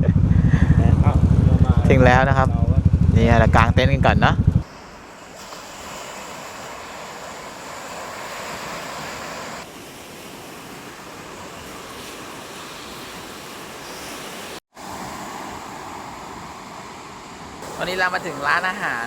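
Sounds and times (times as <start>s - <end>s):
sea surf washing onto beach: 4.6s - 19.0s.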